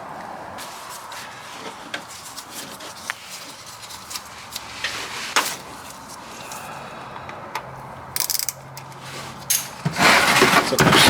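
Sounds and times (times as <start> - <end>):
hand tools clicking on metal: 8.2 - 9.9
metal scrape: 9.0 - 11.0.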